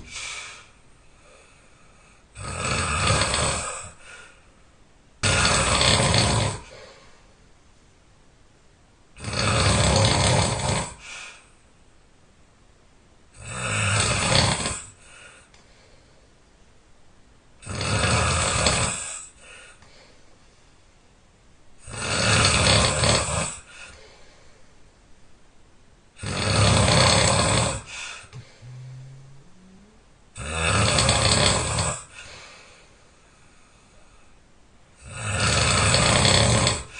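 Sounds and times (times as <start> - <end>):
quiet breathing: 0.0 - 2.4, 3.0 - 4.8, 5.9 - 7.6, 10.4 - 11.8, 13.9 - 16.8, 18.4 - 21.2, 23.1 - 25.2, 27.0 - 36.9
person snoring loudly: 2.4 - 4.0, 5.2 - 6.8, 9.2 - 11.1, 13.4 - 15.0, 17.6 - 19.3, 21.8 - 23.8, 26.2 - 32.2, 35.0 - 36.9
short low rising sound: 28.6 - 30.1.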